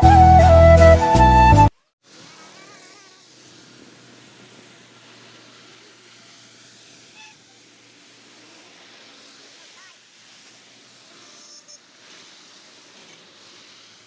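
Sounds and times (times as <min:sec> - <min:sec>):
steady outdoor hiss: 0:00.0 - 0:14.0
short chirping calls: 0:07.1 - 0:07.7.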